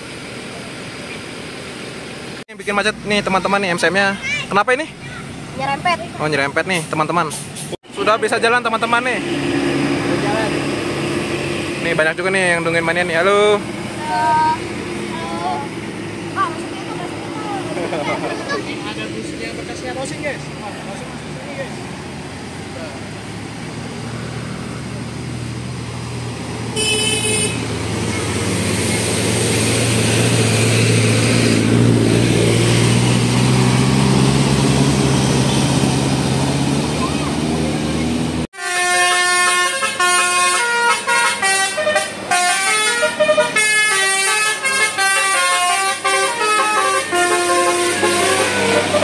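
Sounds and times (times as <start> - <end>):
bus diesel engine running: 0.0 - 49.0
high horn toot: 26.7 - 27.8, 38.6 - 49.0
multi-tone bus horn melody: 26.7 - 28.0, 38.5 - 49.0.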